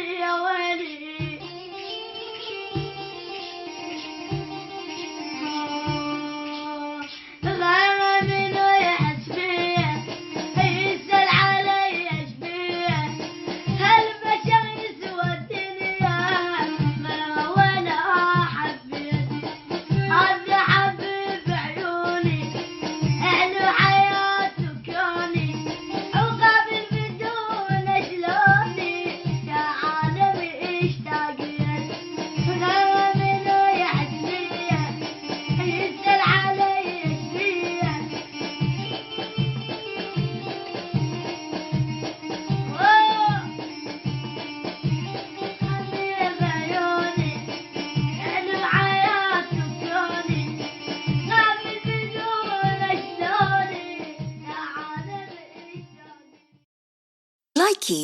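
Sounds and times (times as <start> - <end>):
instrumental backing: 0.0 - 56.5
high ornamented singing voice: 5.0 - 19.2, 57.6 - 58.0
drum beat: 7.4 - 20.9
high voice singing: 57.6 - 58.0.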